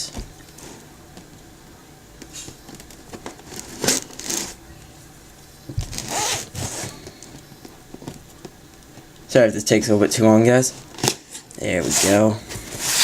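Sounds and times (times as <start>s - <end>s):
knife cutting packing tape: 11.9s - 13.0s.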